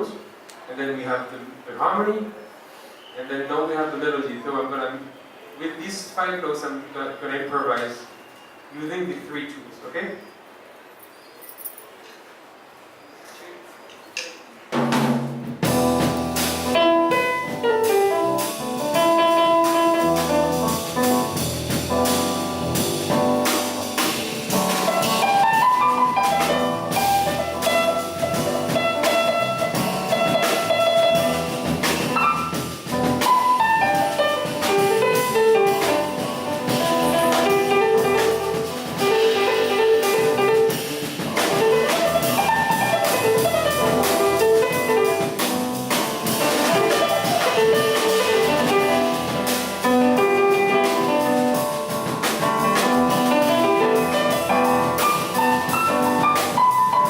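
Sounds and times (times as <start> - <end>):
drum kit groove: 14.6 - 57.0
piano melodic phrases: 15.6 - 57.0.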